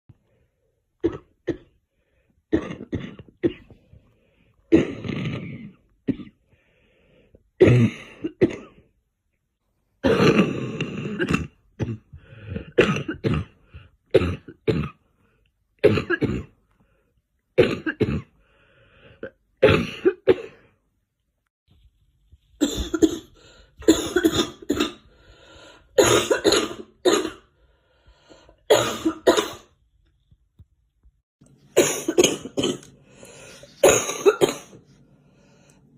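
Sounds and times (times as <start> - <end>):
girl coughing: 10.0 - 12.1, 12.7 - 15.0, 15.8 - 16.6, 19.6 - 20.6, 22.6 - 25.0, 26.0 - 27.5, 28.7 - 29.7, 31.8 - 32.9, 33.8 - 34.8.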